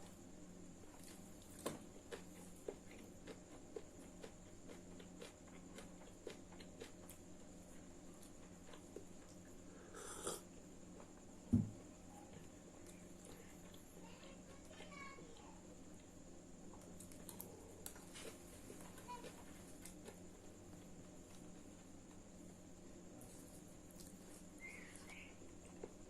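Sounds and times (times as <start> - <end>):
faint steady hum: 0.0 - 26.0
chewing clicks and smacks: 1.0 - 7.5, 16.7 - 21.6, 23.3 - 24.4
low thump: 11.5 - 11.8.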